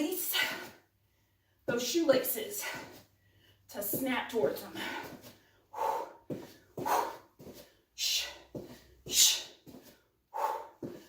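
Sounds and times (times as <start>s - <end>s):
shuffling footsteps: 1.7s - 3.1s, 3.7s - 11.0s
sharp breathy exhales: 5.7s - 6.2s, 10.3s - 11.0s.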